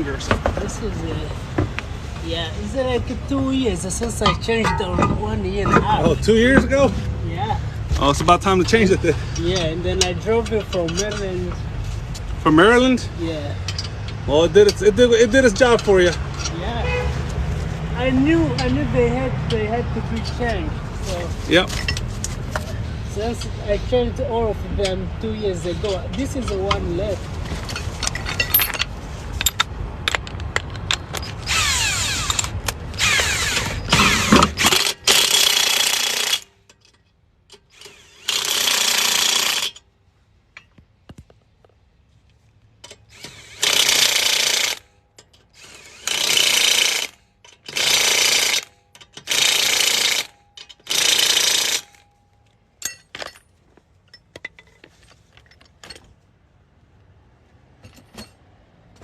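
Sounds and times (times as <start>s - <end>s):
impact wrench hammering: 30.9s - 36.8s, 37.5s - 39.8s, 42.8s - 52.0s.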